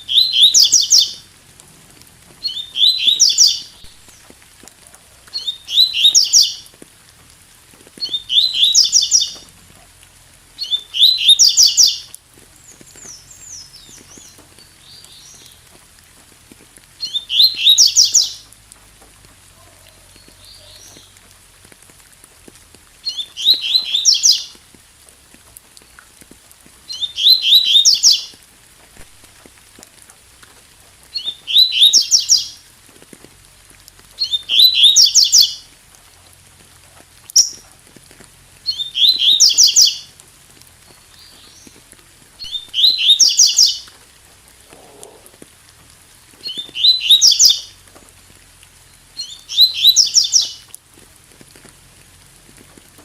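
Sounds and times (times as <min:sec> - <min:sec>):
bird chirping song: 0:00.0 - 0:01.2, 0:02.4 - 0:04.3, 0:05.3 - 0:06.7, 0:08.0 - 0:09.4, 0:10.6 - 0:15.6, 0:17.0 - 0:18.5, 0:19.6 - 0:21.2, 0:23.0 - 0:24.6, 0:26.9 - 0:28.4, 0:31.1 - 0:32.6, 0:34.2 - 0:35.7, 0:38.7 - 0:40.1, 0:42.4 - 0:43.9, 0:46.4 - 0:47.8, 0:48.9 - 0:50.7
faint rain hiss: 0:00.0 - 0:53.0.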